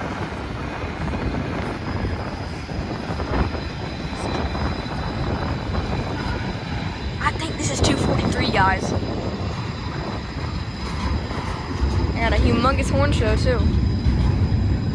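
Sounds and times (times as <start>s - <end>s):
train rumble: 0.0s - 14.9s.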